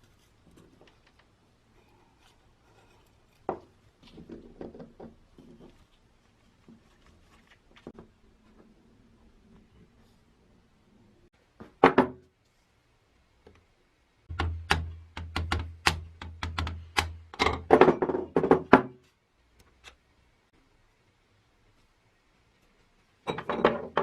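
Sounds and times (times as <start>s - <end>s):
sharp taps and knocks: 14.3s - 18.9s.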